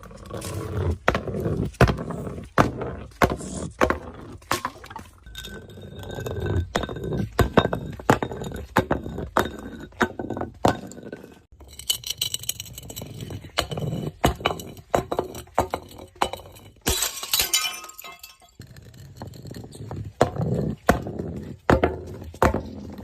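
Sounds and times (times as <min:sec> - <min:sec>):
glass clinking and cracking: 0:04.6 - 0:08.7, 0:11.5 - 0:18.6.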